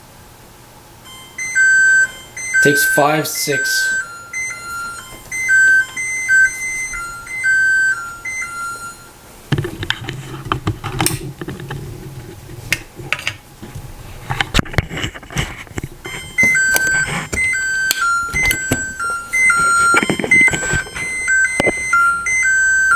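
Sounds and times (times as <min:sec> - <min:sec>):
electronic beeping tune: 0:01.1 - 0:09.1, 0:16.0 - 0:22.9.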